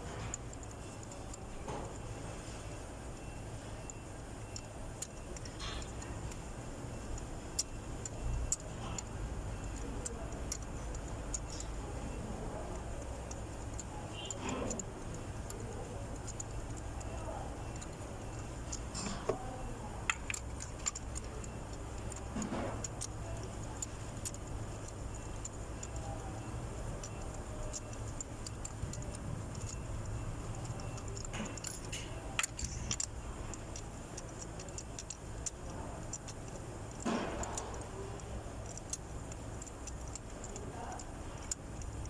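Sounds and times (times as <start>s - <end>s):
steady low hum: 0.0s - 42.0s
hand tools clicking and clinking: 7.6s - 42.0s.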